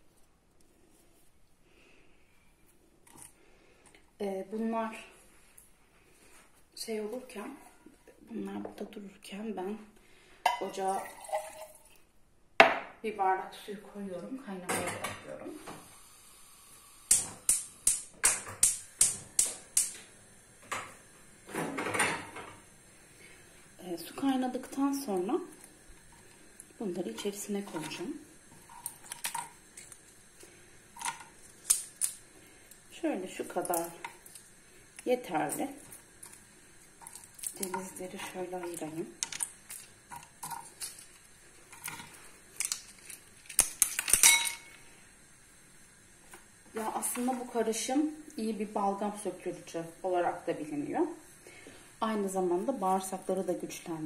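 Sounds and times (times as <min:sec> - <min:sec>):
gas stove igniter clicking: 0:17.0 - 0:21.0
walnut shells clicking and crackling: 0:25.6 - 0:30.3, 0:31.0 - 0:32.9, 0:33.5 - 0:35.1, 0:35.8 - 0:44.8.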